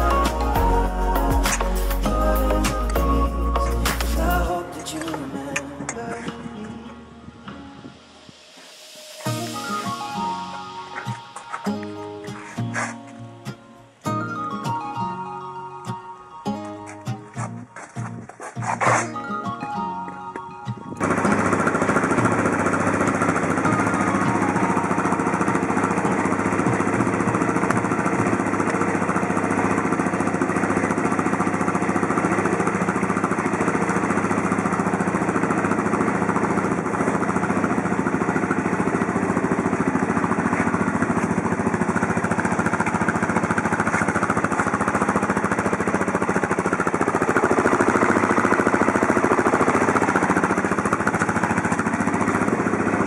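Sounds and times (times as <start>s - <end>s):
quad engine chugging: 0.0s - 7.2s, 20.8s - 53.0s.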